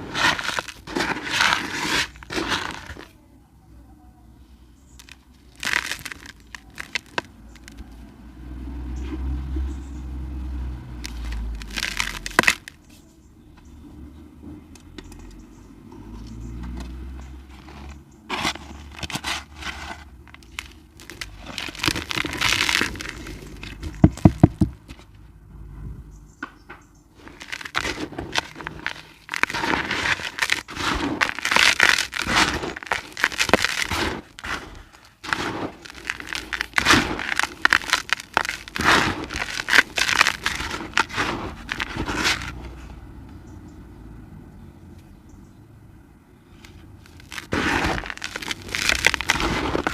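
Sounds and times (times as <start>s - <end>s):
dry cement crunching: 0.0s - 3.2s, 4.7s - 8.1s, 10.9s - 13.7s, 16.1s - 25.2s, 27.0s - 43.0s, 46.5s - 49.9s
sharp cracks: 5.0s - 7.8s, 11.0s - 12.8s, 20.2s - 24.8s, 27.2s - 42.6s, 46.6s - 49.9s.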